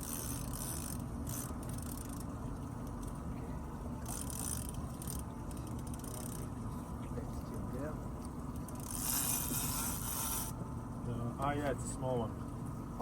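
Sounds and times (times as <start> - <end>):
fishing reel whirring and clicking: 0.0 - 3.2, 4.0 - 6.5, 8.5 - 10.6
boat rumble: 0.0 - 13.0.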